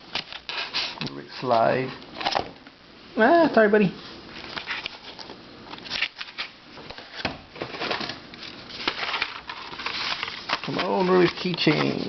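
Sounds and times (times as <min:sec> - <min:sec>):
rustling: 0:04.0 - 0:12.0.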